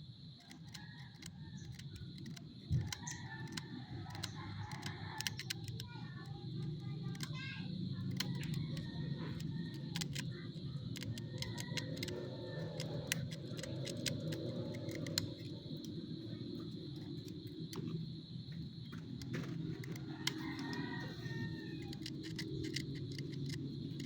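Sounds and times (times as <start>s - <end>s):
metal hand tools clicking: 1.1s - 5.8s, 8.0s - 10.3s, 10.9s - 16.0s, 19.8s - 24.0s
steady low hum: 5.9s - 24.0s.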